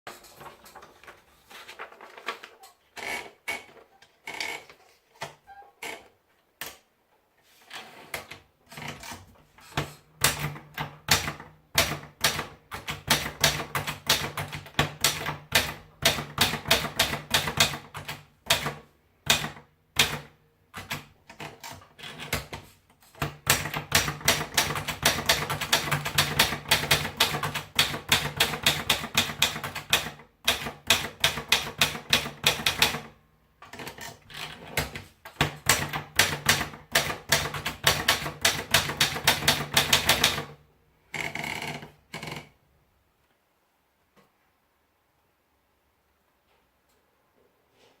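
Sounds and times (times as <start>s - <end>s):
typewriter typing: 7.8s - 40.6s.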